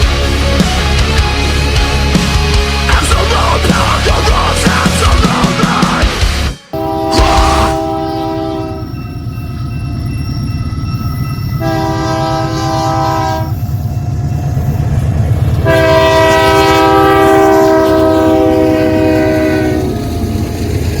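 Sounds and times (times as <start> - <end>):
train low rumble: 0.0 - 21.0
locomotive air horn blasts: 6.7 - 8.9, 11.6 - 13.5, 15.6 - 19.9.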